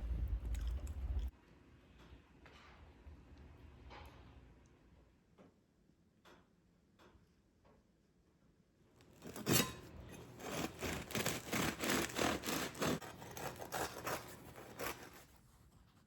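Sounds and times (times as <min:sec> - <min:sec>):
bread knife sawing crusty loaf: 0:09.1 - 0:16.0.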